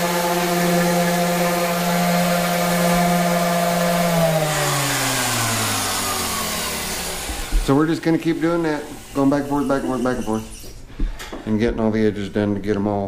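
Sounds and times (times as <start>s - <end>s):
electric sander running: 0.0s - 10.1s
motor winding down: 0.0s - 10.3s.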